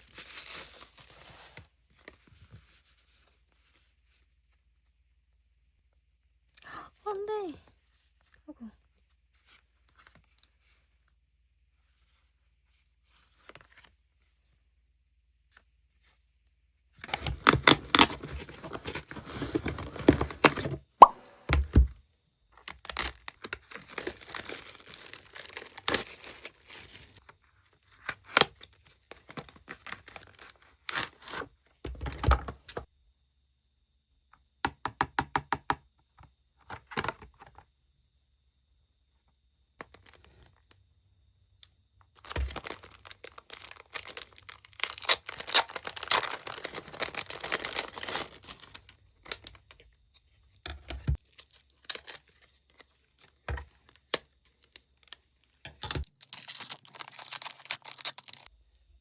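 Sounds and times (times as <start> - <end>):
plastic and paper crinkling: 0.0 - 4.6, 17.1 - 20.8, 22.6 - 32.5, 42.2 - 49.8, 50.6 - 58.5.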